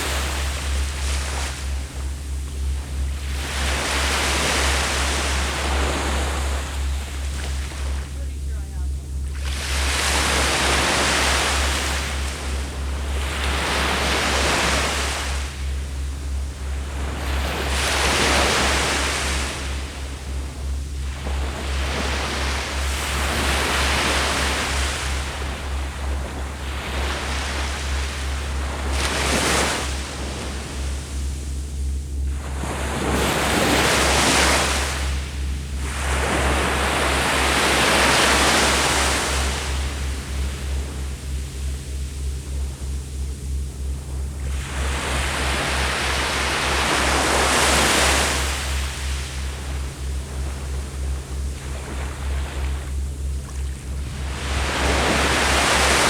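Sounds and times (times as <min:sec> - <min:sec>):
steady low rumble: 0:00.0 - 0:56.0
sea waves breaking on beach: 0:02.9 - 0:15.9, 0:21.1 - 0:31.2, 0:32.3 - 0:41.4, 0:44.4 - 0:56.0.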